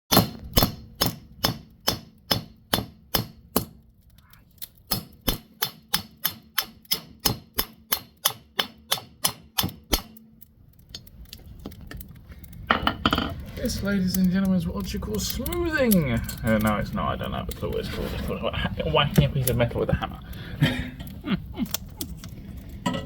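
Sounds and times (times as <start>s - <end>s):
hammer striking metal on anvil: 0.1s - 3.7s, 4.9s - 10.1s.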